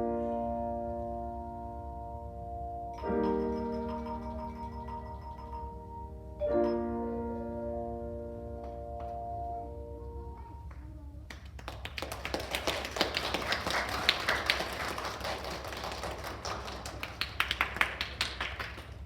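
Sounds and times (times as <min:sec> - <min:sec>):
chime note ringing: 0:02.9 - 0:07.5
audience clapping: 0:10.7 - 0:19.0.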